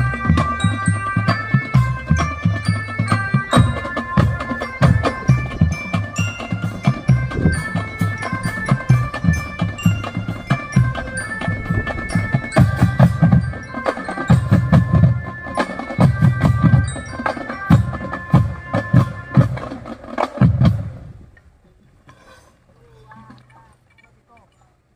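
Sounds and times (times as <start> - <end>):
tuned mallet percussion melody: 0.0 - 19.9
pounding drums: 0.0 - 21.1.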